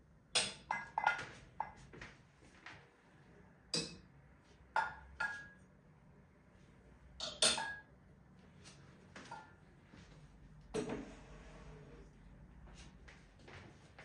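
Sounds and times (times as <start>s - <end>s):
tableware clinking: 4.8s - 5.6s, 7.2s - 7.9s.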